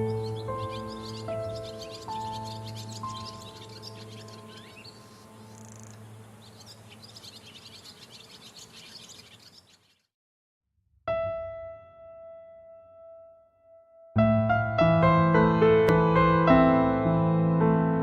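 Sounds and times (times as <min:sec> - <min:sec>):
calm ambient music with drone: 0:00.0 - 0:08.2
birds chirping: 0:00.0 - 0:10.1.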